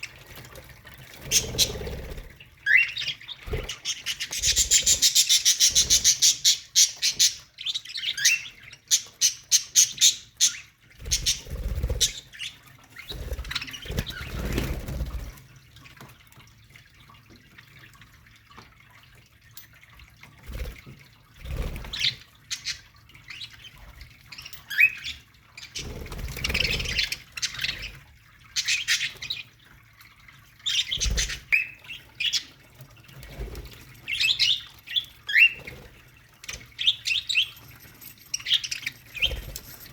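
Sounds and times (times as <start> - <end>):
budgerigars chirping and squawking: 1.2 - 2.0, 2.6 - 14.5, 21.8 - 29.5, 30.6 - 32.6, 36.5 - 39.9.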